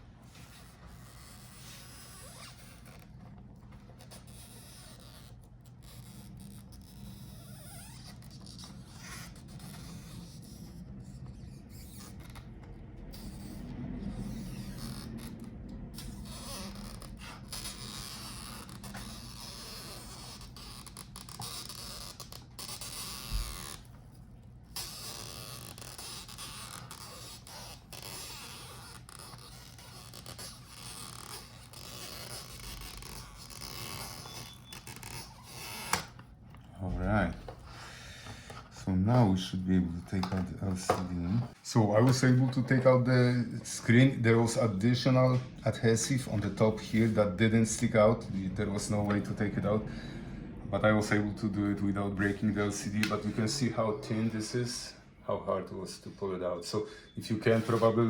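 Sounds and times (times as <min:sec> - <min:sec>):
adhesive strips creaking and scraping: 0:00.3 - 0:37.6, 0:57.4 - 0:58.0.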